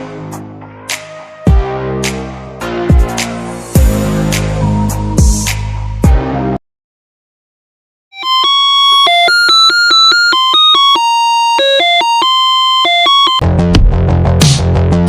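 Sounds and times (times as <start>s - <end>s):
electronic doorbell tune: 8.1s - 13.4s.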